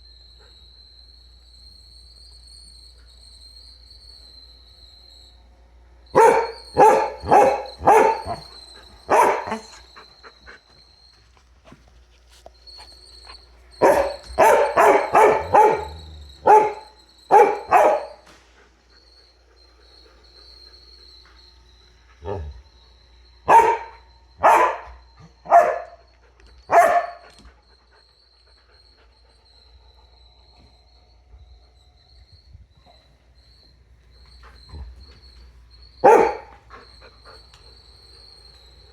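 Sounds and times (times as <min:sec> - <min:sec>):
dog barking: 0:06.1 - 0:09.8, 0:13.8 - 0:18.3, 0:23.4 - 0:26.1, 0:26.7 - 0:27.4, 0:36.0 - 0:36.6.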